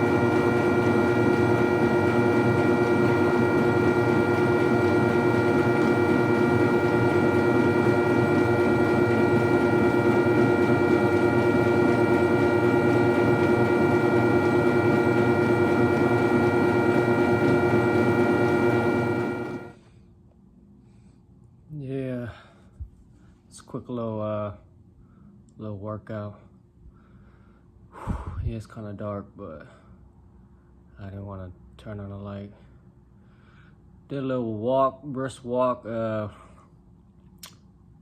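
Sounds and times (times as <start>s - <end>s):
treadmill belt hum: 0.0s - 19.8s
treadmill motor whining: 0.0s - 19.8s.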